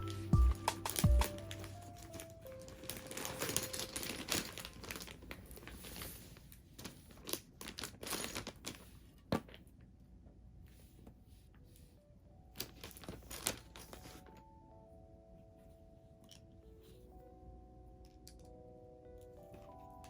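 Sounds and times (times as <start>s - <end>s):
packaging crinkling and rustling: 1.3s - 9.7s, 12.6s - 14.5s.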